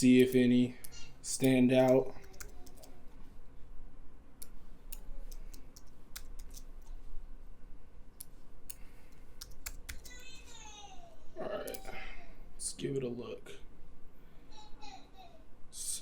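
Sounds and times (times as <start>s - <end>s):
mouse and keyboard clicks: 4.4s - 7.0s, 9.4s - 10.1s.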